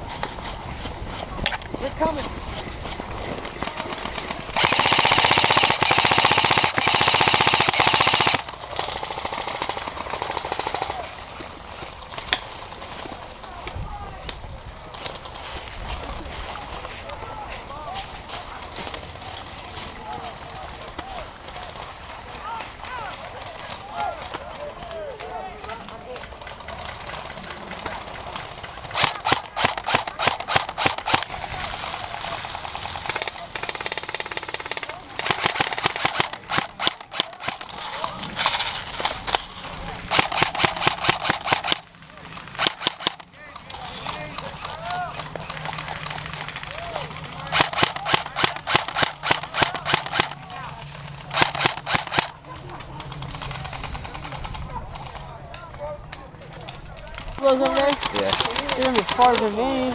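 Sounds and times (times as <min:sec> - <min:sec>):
faint rattle of gunfire: 0:03.4 - 0:11.4, 0:23.2 - 0:55.8, 0:56.5 - 0:59.9
electric rifle firing full auto: 0:03.6 - 0:11.0, 0:27.2 - 0:44.8, 0:45.4 - 0:52.4.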